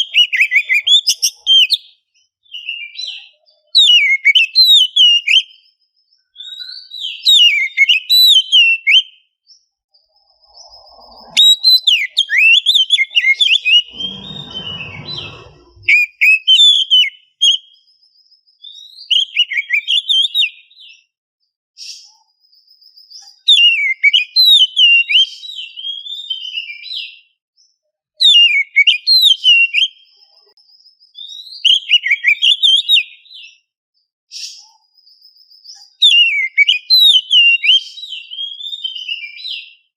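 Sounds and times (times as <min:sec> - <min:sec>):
bird singing whistled phrases: 0:00.0 - 0:09.3, 0:10.2 - 0:17.8, 0:18.6 - 0:21.0, 0:31.2 - 0:33.6, 0:36.0 - 0:39.8.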